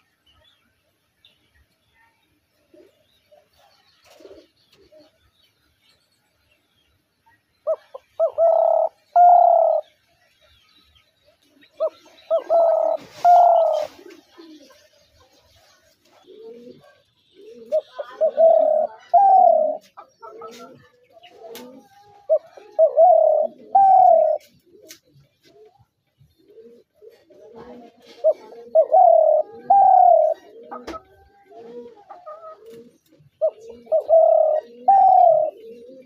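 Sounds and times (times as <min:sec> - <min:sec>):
dove cooing: 0:02.6 - 0:05.2, 0:07.6 - 0:09.9, 0:11.7 - 0:36.0
fainter lower cooing: 0:17.5 - 0:24.9, 0:26.6 - 0:36.0.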